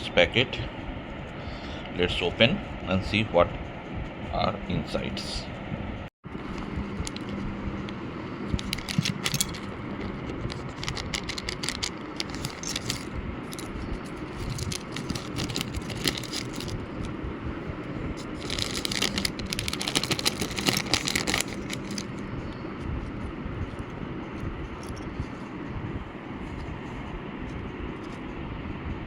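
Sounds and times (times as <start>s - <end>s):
low background rumble: 0.0s - 29.0s
small parts rattling and clicking: 6.4s - 17.1s, 18.2s - 22.2s
plastic packet crinkling: 6.5s - 7.4s, 8.6s - 17.1s, 18.2s - 22.2s.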